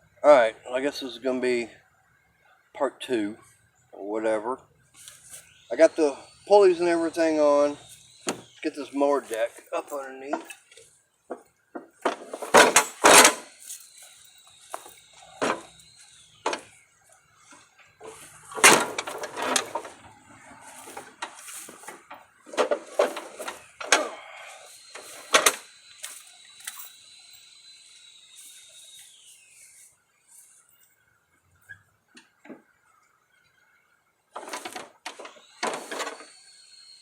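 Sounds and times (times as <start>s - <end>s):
metal mower deck clanking: 12.0s - 13.5s, 18.0s - 20.1s, 20.9s - 24.2s
faint thin high whine: 12.2s - 32.1s, 34.4s - 37.0s.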